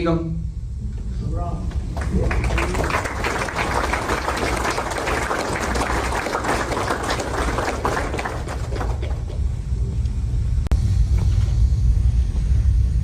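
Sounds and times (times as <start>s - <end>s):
crowd applauding: 1.8s - 9.6s.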